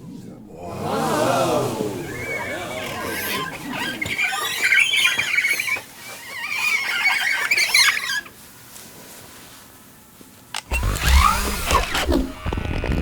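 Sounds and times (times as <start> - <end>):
high-pitched squeaking chatter: 0.6 - 8.3.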